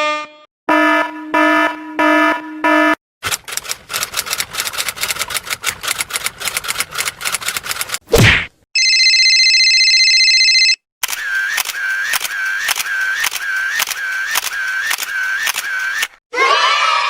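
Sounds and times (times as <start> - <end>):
rapid sharp clicks: 3.2 - 8.0, 11.0 - 16.2.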